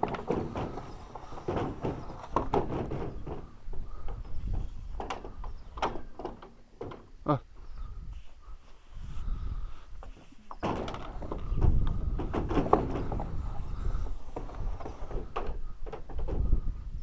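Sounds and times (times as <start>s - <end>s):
pipes knocking and clattering: 0.0s - 7.1s, 10.2s - 16.7s.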